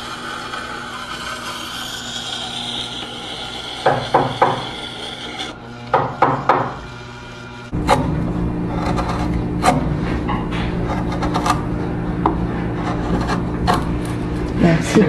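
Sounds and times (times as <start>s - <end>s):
steady background hum: 0.0s - 15.0s
sharp wooden knocks: 3.8s - 4.7s, 5.9s - 6.8s.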